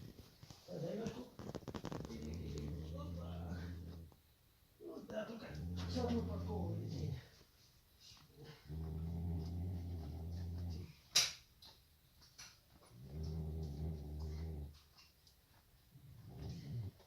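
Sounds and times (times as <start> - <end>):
goat snoring: 1.6 - 4.2, 5.4 - 7.3, 8.3 - 11.0, 12.9 - 14.8, 16.0 - 17.0.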